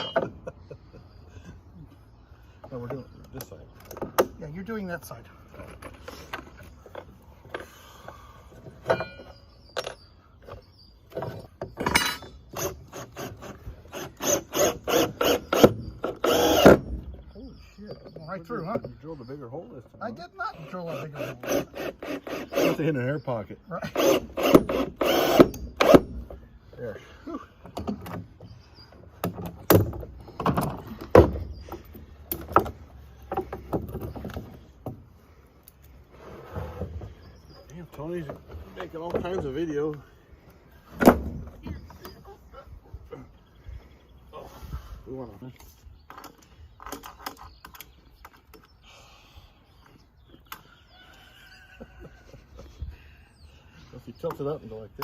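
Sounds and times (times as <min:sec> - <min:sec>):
knocks of wooden parts and tools: 0:02.6 - 0:04.4, 0:05.5 - 0:13.6, 0:27.6 - 0:28.6, 0:29.2 - 0:35.1, 0:38.2 - 0:39.6, 0:40.9 - 0:42.2.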